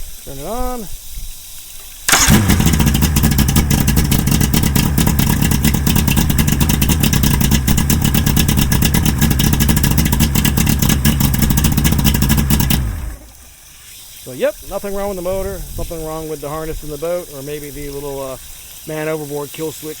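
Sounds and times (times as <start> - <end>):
outboard motor idling: 2.1 - 13.7.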